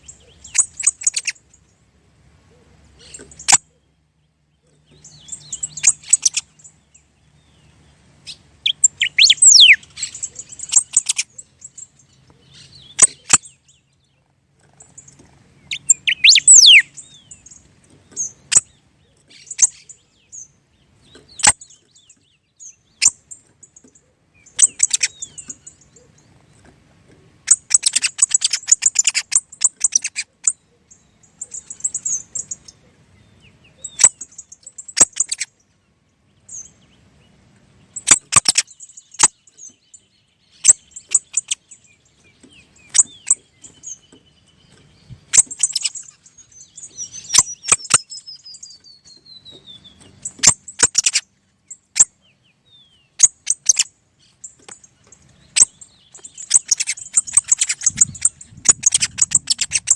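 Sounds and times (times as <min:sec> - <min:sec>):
songbirds chirping: 0:00.0 - 0:59.9
thin descending whistle: 0:09.1 - 0:09.8.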